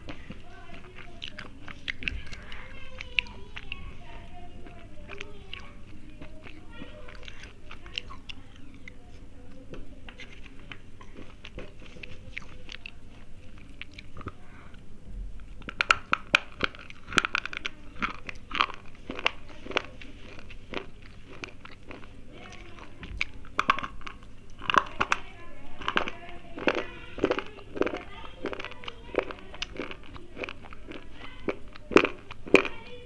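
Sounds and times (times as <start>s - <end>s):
pencils being bitten and chewed: 0.0s - 14.4s, 15.5s - 33.0s.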